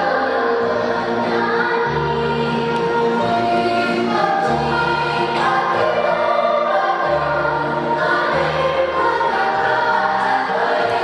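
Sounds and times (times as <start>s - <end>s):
children's choir singing: 0.0s - 11.0s.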